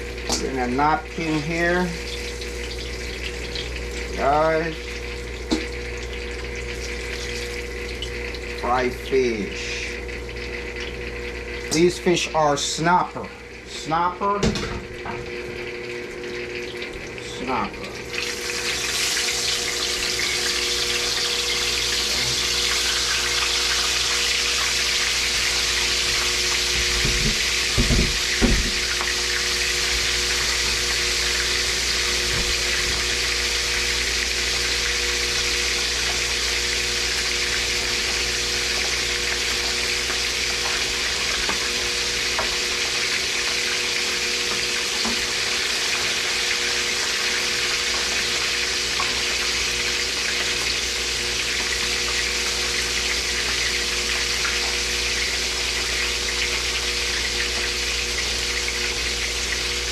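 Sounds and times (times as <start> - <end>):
oil sizzling in a frying pan: 0.0 - 59.9.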